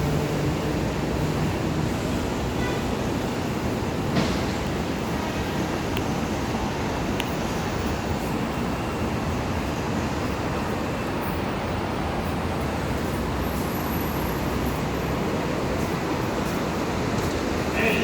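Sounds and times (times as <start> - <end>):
subway train wheels rumbling: 0.0 - 18.0.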